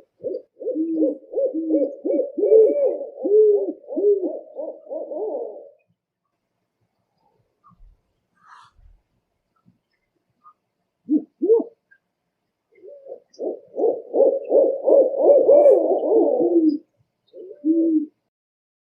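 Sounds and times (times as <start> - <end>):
owl hooting: 0.0 - 5.8, 11.1 - 11.8, 12.8 - 18.2.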